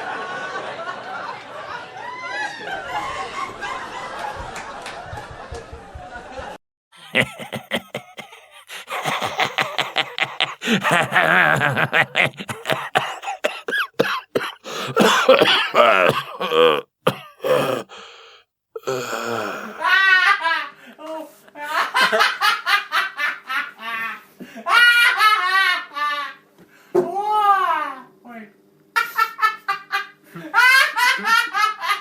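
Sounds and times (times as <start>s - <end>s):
person laughing: 7.0s - 18.2s, 18.8s - 20.1s.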